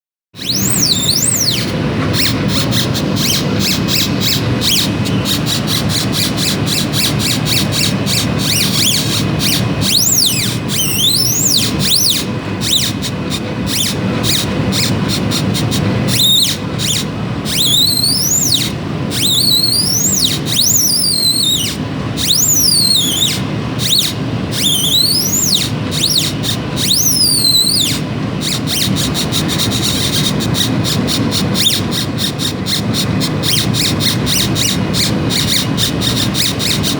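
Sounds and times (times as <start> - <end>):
rapid stop-start ticking: 0.4 - 36.9
steady low hum: 0.4 - 36.9
stepper motors whining: 0.4 - 36.9.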